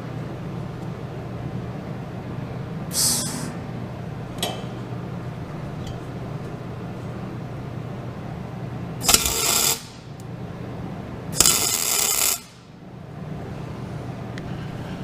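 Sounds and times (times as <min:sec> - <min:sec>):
welding arc crackling: 0:09.0 - 0:10.2, 0:11.4 - 0:12.6.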